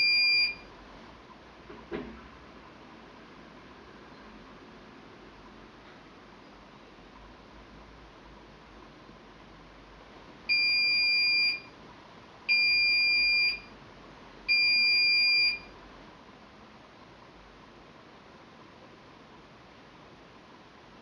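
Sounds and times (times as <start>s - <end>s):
washing machine high beeps: 0.0s - 0.7s, 10.5s - 11.7s, 12.5s - 13.8s, 14.5s - 15.8s.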